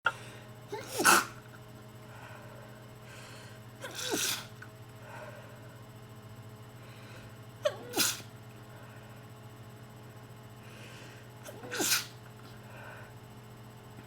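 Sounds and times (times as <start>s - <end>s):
person sneezing: 0.7s - 1.4s, 3.8s - 4.6s, 7.6s - 8.3s, 11.4s - 12.2s.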